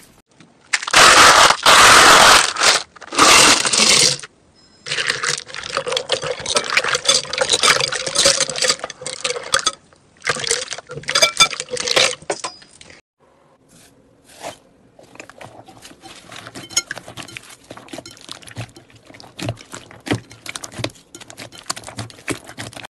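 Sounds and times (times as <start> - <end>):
slime crackling and squishing: 15.0 - 22.9.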